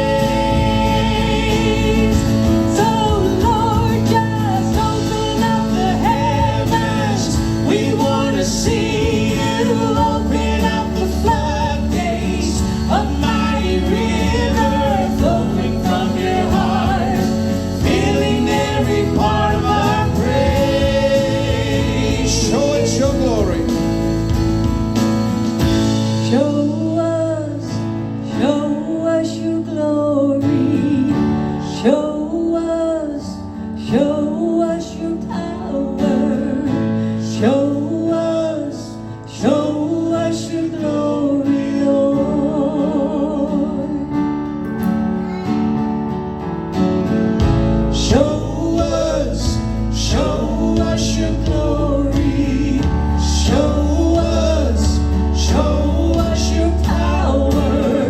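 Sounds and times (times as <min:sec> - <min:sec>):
person singing: 0:00.0 - 0:24.0, 0:47.9 - 0:58.0
band playing worship song: 0:00.0 - 0:58.0.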